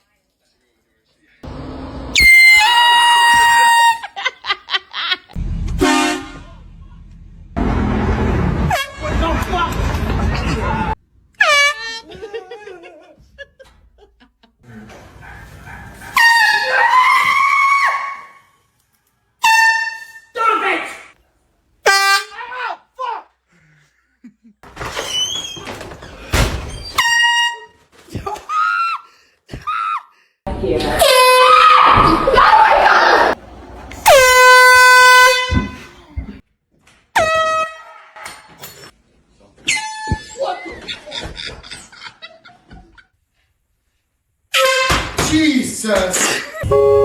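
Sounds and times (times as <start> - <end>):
air horn blaring: 1.5 - 4.1, 5.7 - 6.6, 33.6 - 36.0, 46.6 - 47.0
person screaming: 31.0 - 33.4.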